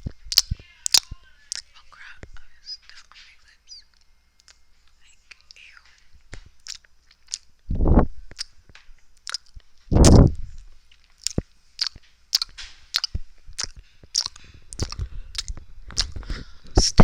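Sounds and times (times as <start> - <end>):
wet mouth clicks and lip smacks: 0.3 - 1.7, 3.9 - 4.6, 5.3 - 7.5, 8.3 - 8.6, 9.2 - 10.3, 10.9 - 17.0
deeper mouth bursts: 9.9 - 10.4.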